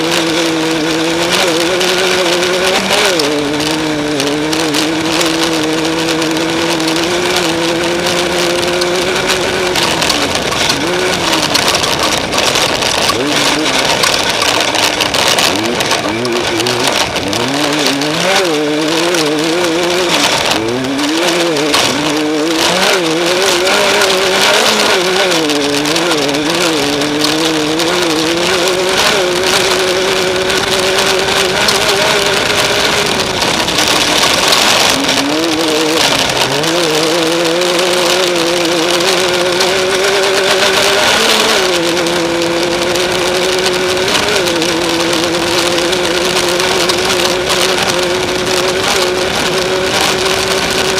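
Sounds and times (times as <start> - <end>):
race vehicle engine running hard: 0.0 - 50.9
wind and driving noise: 0.0 - 50.9.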